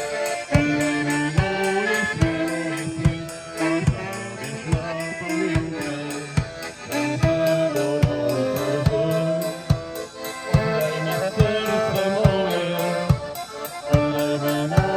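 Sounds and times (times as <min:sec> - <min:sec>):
band melody of long notes: 0:00.0 - 0:14.9
steady drum beat: 0:00.0 - 0:14.9.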